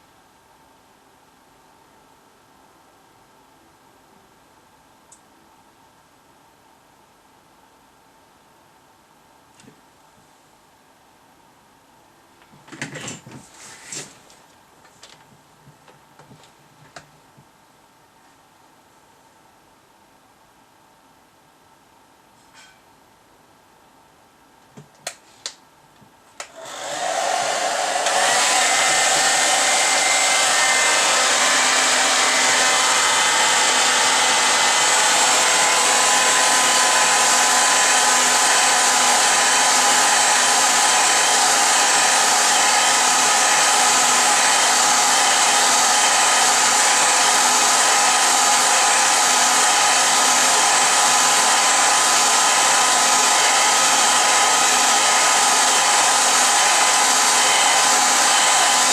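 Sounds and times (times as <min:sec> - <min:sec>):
electric blower motor running: 0:26.5 - 0:58.9.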